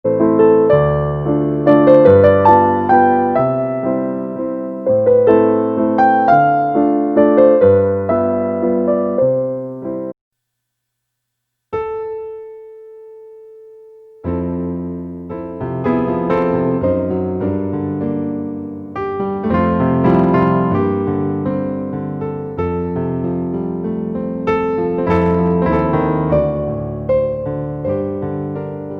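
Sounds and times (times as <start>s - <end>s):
gentle piano melody: 0.1s - 10.2s, 11.7s - 28.9s.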